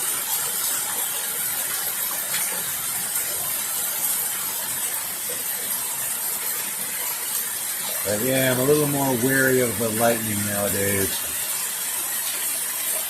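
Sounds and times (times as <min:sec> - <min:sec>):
heavy rain hissing: 0:00.0 - 0:13.0
water splashing from gutter pipe: 0:00.0 - 0:13.0.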